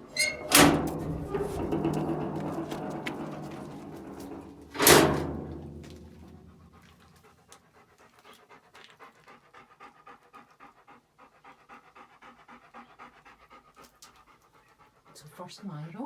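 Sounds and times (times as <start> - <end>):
dog panting: 6.3 - 16.0.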